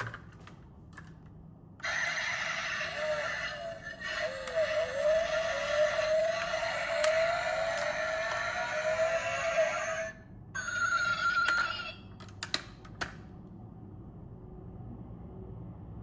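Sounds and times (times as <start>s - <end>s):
sliding electronic tone: 1.8s - 10.1s
steady high electronic tone: 1.8s - 10.2s.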